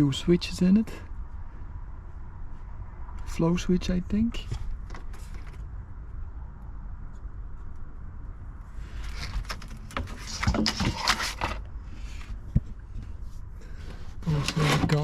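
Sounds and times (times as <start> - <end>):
steady low rumble: 0.0 - 10.5
clicks and knocks of handling: 9.0 - 11.6.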